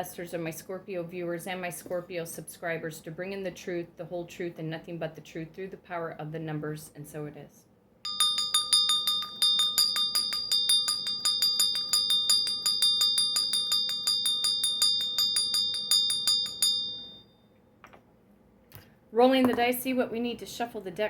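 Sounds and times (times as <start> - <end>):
small metal bell ringing rapidly: 8.1 - 17.3.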